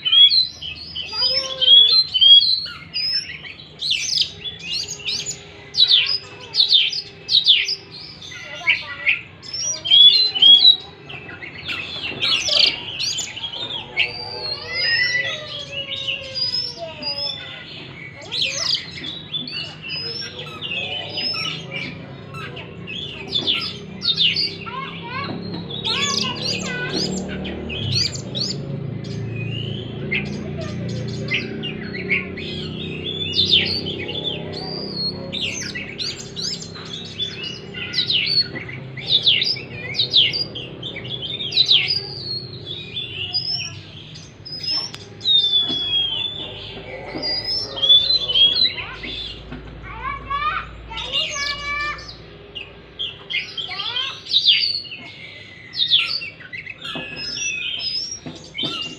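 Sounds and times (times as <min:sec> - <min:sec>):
bird singing chirps and whistles: 0:00.0 - 0:30.4, 0:31.1 - 0:49.4, 0:50.9 - 0:58.9.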